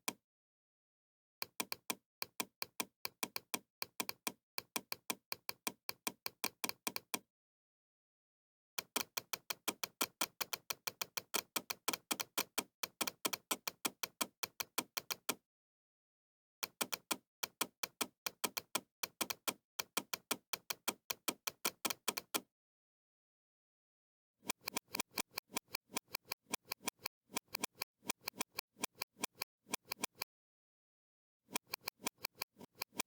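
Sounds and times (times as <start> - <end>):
rapid mouse clicks: 1.5 - 7.2, 8.8 - 15.4, 16.6 - 22.5, 24.4 - 30.3, 31.5 - 33.0.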